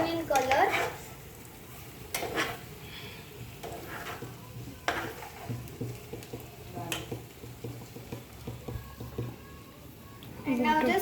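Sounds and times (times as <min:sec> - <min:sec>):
oil sizzling: 0:00.0 - 0:11.0
spoon stirring and scraping pan: 0:00.0 - 0:11.0
spoon knocking against pan: 0:04.1 - 0:09.5.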